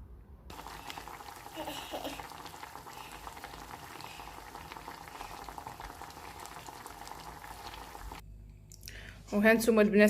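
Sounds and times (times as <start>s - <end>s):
water boiling in a saucepan: 0.5s - 8.2s.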